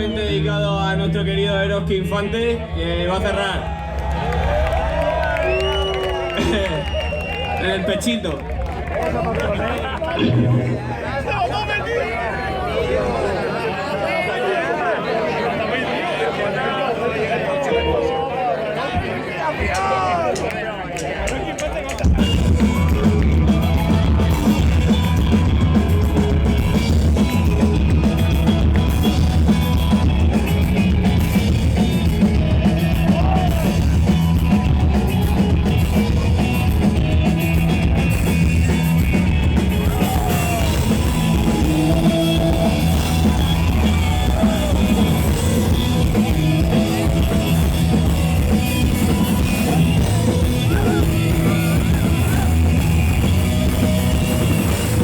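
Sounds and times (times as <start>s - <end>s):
driving drum kit: 3.2s - 11.8s, 19.6s - 55.0s
live rock band playing: 8.6s - 13.2s, 17.7s - 55.0s.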